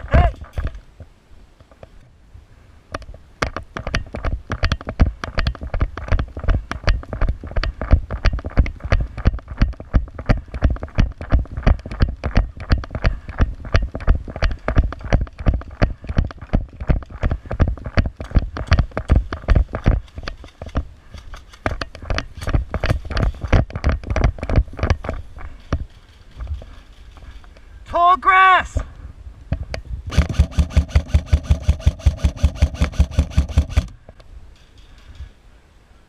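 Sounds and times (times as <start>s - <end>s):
running footsteps: 4.0s - 27.7s.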